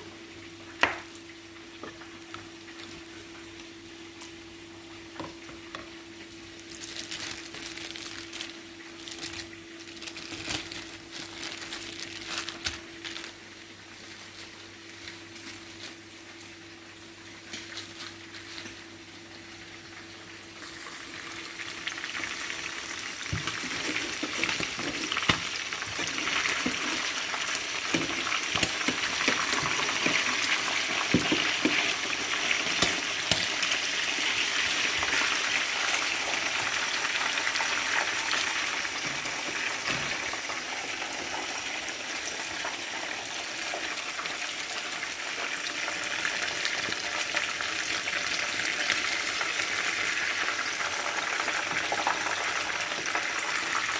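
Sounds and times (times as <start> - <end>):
food sizzling in oil: 18.2 - 53.9.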